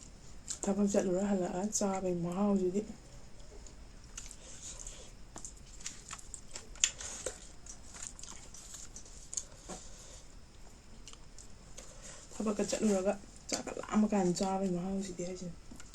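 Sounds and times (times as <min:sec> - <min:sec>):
person chewing and smacking: 0:00.4 - 0:00.7, 0:03.4 - 0:12.1.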